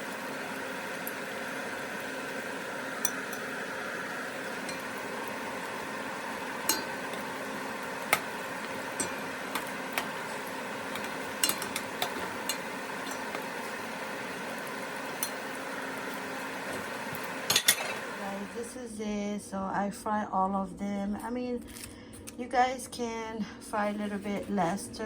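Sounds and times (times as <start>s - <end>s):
food deep-frying in oil: 0.0s - 18.6s.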